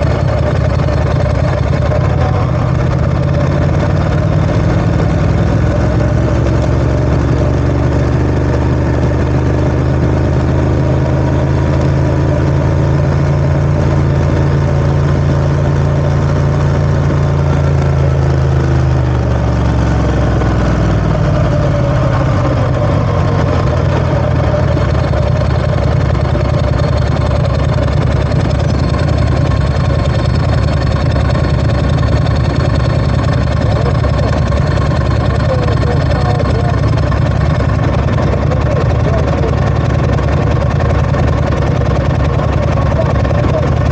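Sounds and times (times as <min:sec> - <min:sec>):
motorcycle engine idling: 0:00.0 - 0:43.9.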